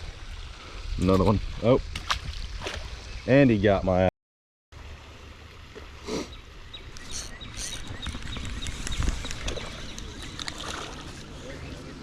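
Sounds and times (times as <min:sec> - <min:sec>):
wind rumbling on microphone: 0:06.7 - 0:12.0.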